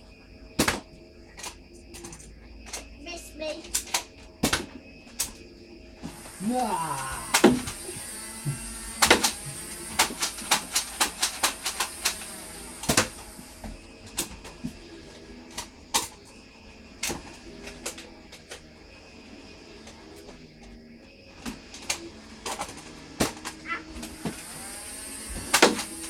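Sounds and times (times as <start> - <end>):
steady hiss: 0.0 - 26.0
foam dart blaster clicks: 6.1 - 13.5, 21.8 - 26.0.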